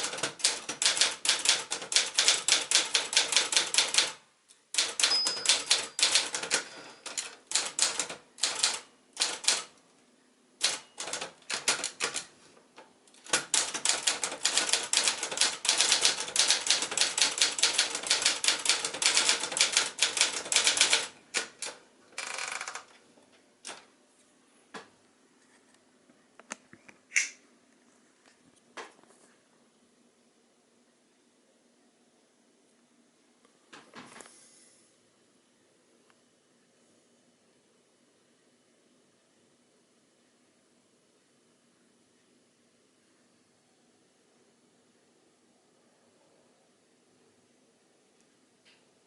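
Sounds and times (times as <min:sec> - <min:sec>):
typewriter keystrokes clattering: 0:00.0 - 0:09.7, 0:10.6 - 0:12.3, 0:13.2 - 0:22.9.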